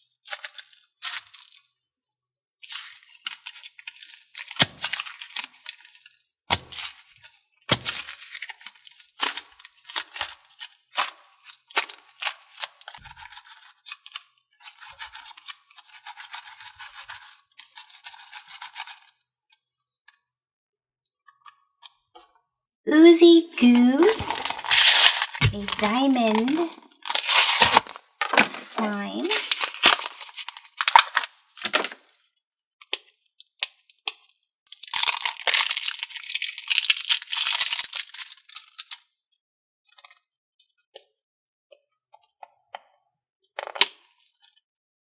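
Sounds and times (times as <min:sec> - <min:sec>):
slime squeezed by hand crackling: 0:23.2 - 0:31.2, 0:34.8 - 0:39.0.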